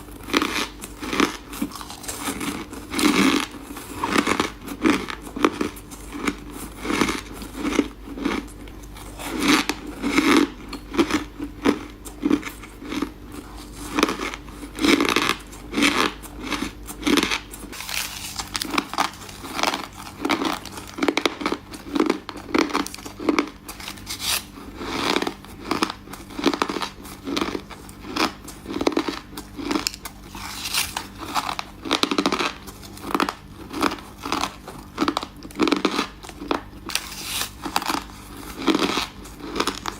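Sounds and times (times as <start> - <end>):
person chewing ice: 0.0 - 39.9.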